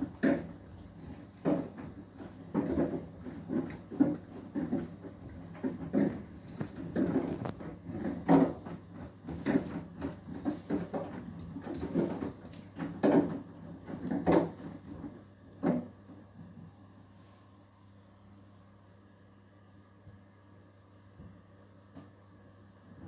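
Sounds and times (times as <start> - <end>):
wet laundry tumbling in drum: 0.0 - 16.6
washing machine low hum: 0.0 - 23.0.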